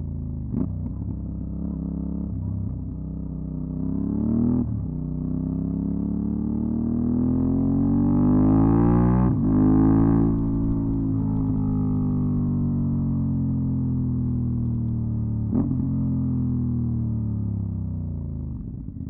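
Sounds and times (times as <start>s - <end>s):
motorcycle engine accelerating: 0.0s - 19.0s.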